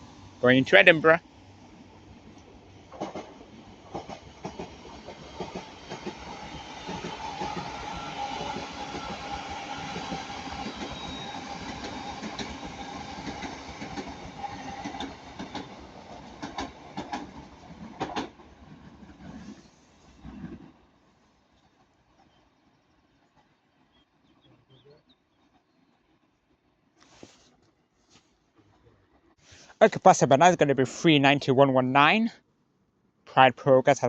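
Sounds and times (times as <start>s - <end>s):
train rumble: 0.0s - 23.9s
train wheels clicking over rail joints: 2.2s - 19.6s.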